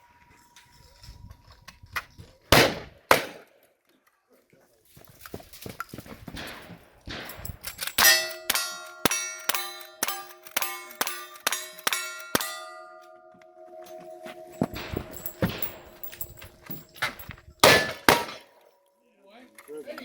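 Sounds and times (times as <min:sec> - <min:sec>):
gunshots: 0:02.5 - 0:03.5, 0:06.4 - 0:12.6, 0:17.6 - 0:18.6
steel targets clanging: 0:06.3 - 0:18.7.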